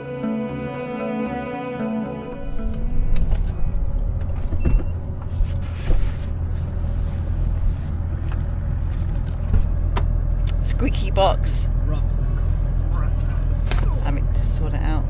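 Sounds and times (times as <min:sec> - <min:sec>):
vehicle road noise rumble: 0:02.2 - 0:15.0.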